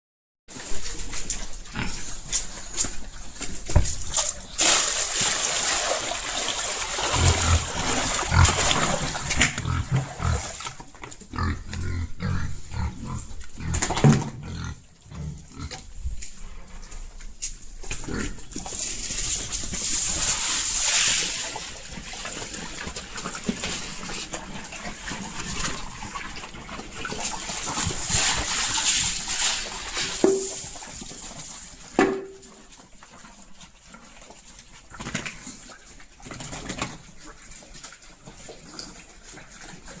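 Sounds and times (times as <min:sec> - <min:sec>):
pigs munching and slurping: 0:00.5 - 0:40.0
pigs grunting: 0:00.6 - 0:04.6, 0:06.5 - 0:20.5.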